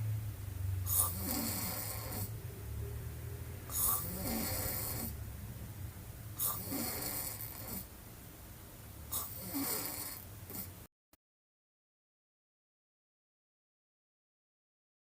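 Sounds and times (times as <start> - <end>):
woman snoring: 0.8 - 2.4, 3.7 - 5.2, 6.4 - 7.9, 9.1 - 10.7.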